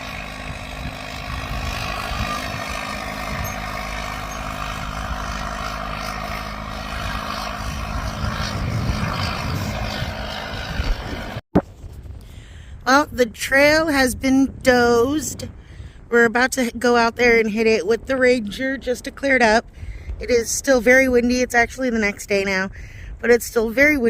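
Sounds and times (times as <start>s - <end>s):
diesel engine running: 0.0s - 11.4s
wind buffeting microphone: 0.0s - 24.0s.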